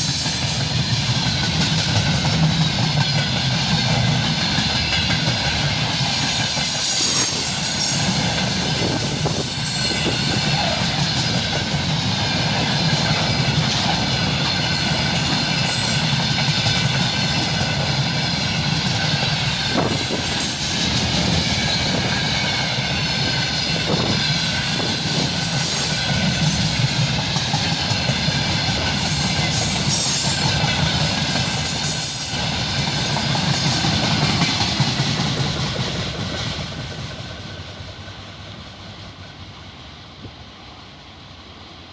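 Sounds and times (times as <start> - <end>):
high-pitched wheel squeals: 6.2 - 11.3, 23.7 - 26.3.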